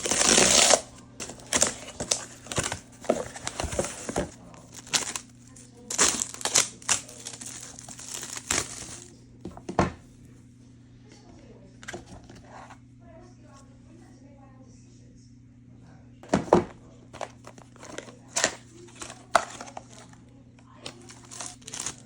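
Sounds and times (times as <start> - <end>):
packaging rustling and crinkling: 0.0 - 9.7, 16.2 - 20.2, 20.8 - 22.0.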